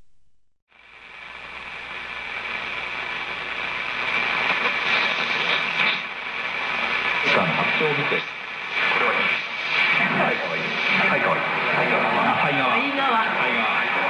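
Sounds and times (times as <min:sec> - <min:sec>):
radio crackle: 0:00.0 - 0:14.0
radio static hiss: 0:00.0 - 0:14.0.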